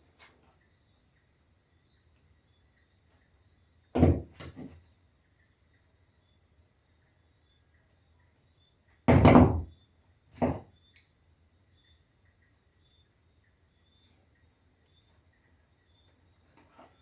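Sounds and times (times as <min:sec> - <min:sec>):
thuds: 0:04.0 - 0:04.7, 0:09.1 - 0:09.7.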